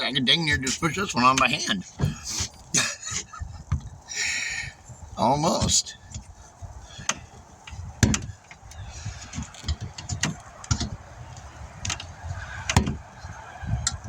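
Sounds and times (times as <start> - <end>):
tire knocking on wheel rim: 9.3 - 14.0.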